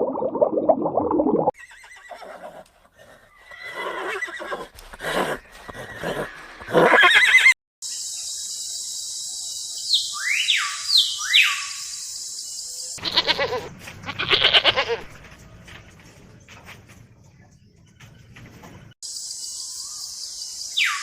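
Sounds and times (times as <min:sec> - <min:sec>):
horse neighing: 0:01.6 - 0:07.5.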